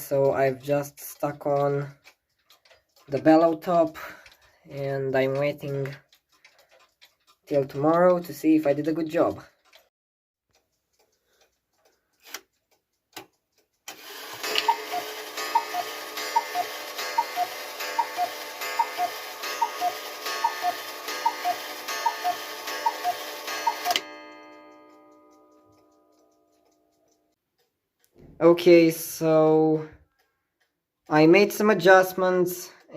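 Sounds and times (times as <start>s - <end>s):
clock ticking: 0.0s - 32.9s
cuckoo clock calling: 13.9s - 27.3s.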